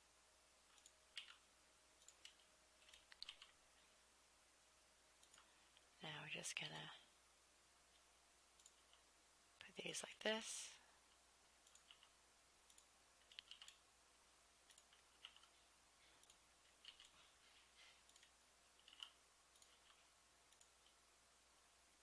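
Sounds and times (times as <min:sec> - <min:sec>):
mouse and keyboard clicks: 0:02.0 - 0:03.6, 0:11.6 - 0:13.8, 0:14.7 - 0:15.6, 0:16.2 - 0:17.2, 0:18.0 - 0:21.0.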